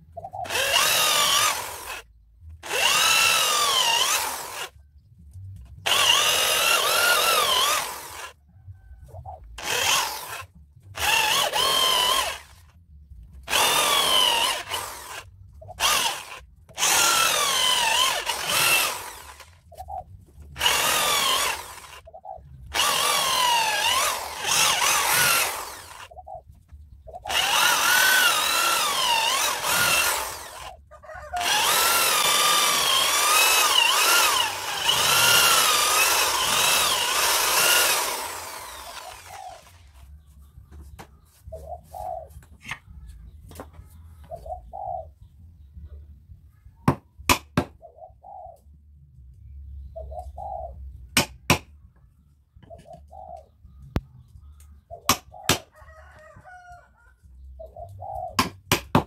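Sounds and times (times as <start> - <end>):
power tool cutting wood: 0.4 - 2.0, 2.6 - 4.7, 5.8 - 8.4, 9.6 - 12.6, 13.5 - 19.6, 20.6 - 22.1, 22.7 - 26.1, 27.2 - 40.0.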